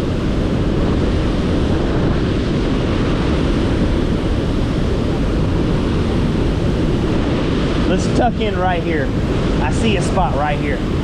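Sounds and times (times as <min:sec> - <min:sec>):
wind buffeting microphone: 0:00.0 - 0:11.0
waterfall rushing: 0:06.1 - 0:11.0.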